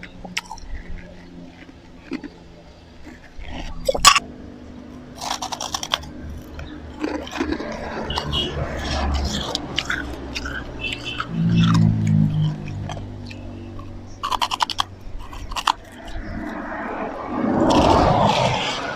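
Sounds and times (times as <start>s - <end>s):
crunching and chewing ice: 0.0s - 17.0s
low hum: 0.0s - 18.9s.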